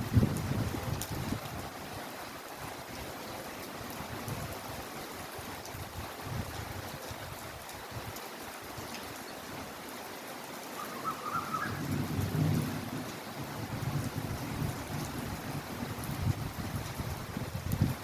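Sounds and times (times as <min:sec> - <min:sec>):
heavy rain falling: 0:00.0 - 0:18.0.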